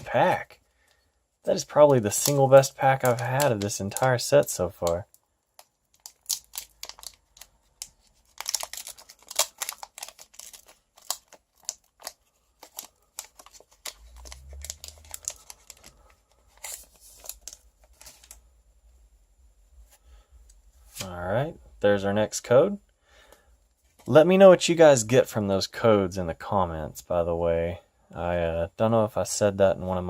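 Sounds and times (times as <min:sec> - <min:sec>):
foil wrapper crinkling and tearing: 0:01.7 - 0:18.4
cards handled: 0:01.9 - 0:04.1.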